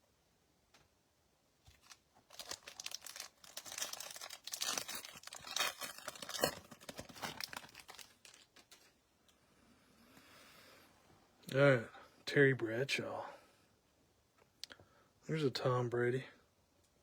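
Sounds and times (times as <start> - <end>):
wrapper tearing and crinkling: 1.7 - 9.0.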